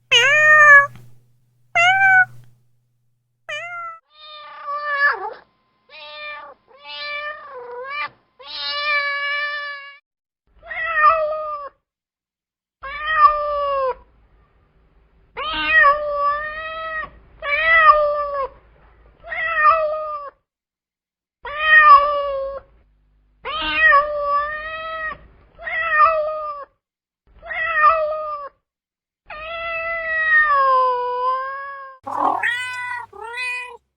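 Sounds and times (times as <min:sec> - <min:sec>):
cat meowing: 0:00.1 - 0:01.2, 0:01.8 - 0:02.5, 0:03.5 - 0:04.5, 0:32.0 - 0:33.8.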